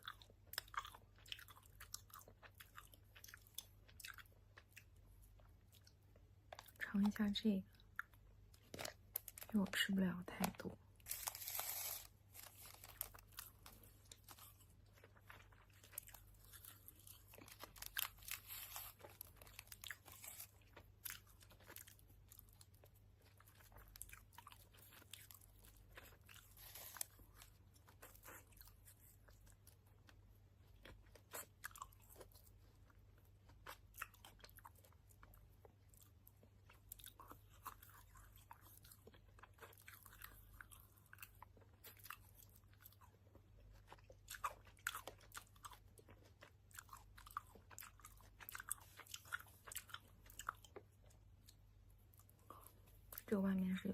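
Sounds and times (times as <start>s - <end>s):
person chewing gummy candy: 0.0s - 53.9s.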